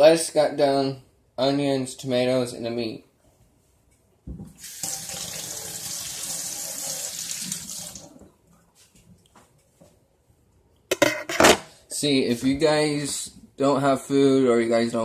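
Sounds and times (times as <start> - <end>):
kitchen tap running: 4.6 - 8.2.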